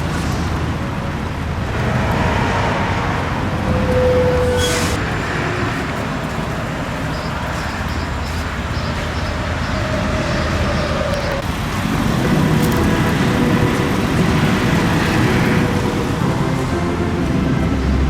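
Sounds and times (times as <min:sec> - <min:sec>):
car road and engine noise: 0:00.0 - 0:18.0.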